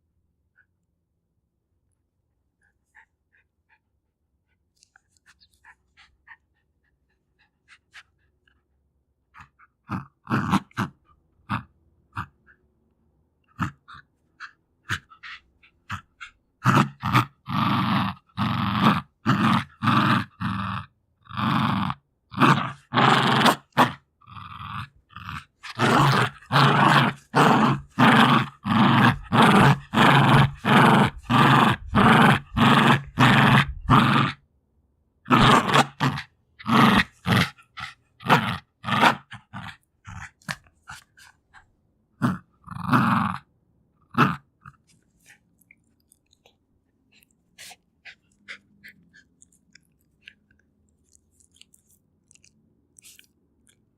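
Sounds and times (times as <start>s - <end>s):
dog breathing: 2.6s - 8.7s, 47.1s - 50.4s
dog growling: 9.3s - 12.6s, 13.5s - 34.4s, 35.3s - 41.6s, 42.2s - 45.4s, 47.1s - 50.6s.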